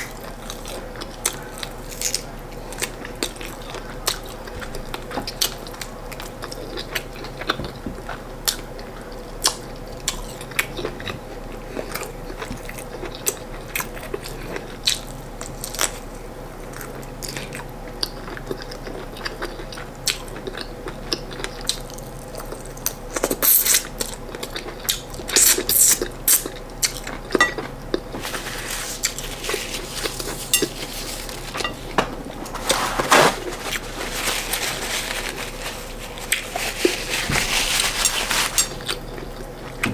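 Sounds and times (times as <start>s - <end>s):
faint steady hum: 0.0s - 39.9s
person chewing food: 16.7s - 39.9s.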